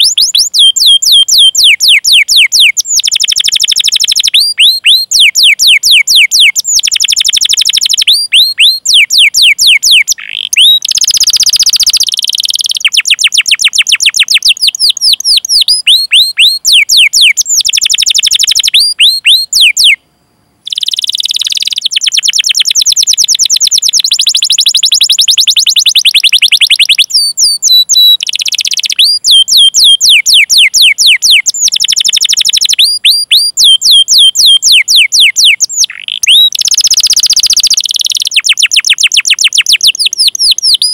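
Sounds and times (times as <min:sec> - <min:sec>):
canary singing: 0:00.0 - 0:20.0, 0:20.6 - 0:40.9.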